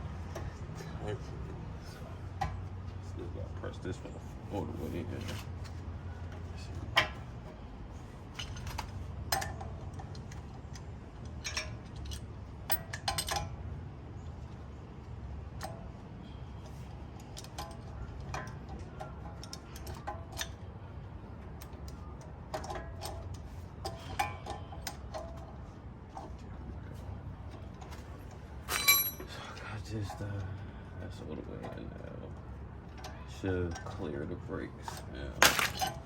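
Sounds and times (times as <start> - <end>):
metal tools clinking on caliper: 8.3 - 13.5, 28.6 - 29.5, 34.9 - 36.0.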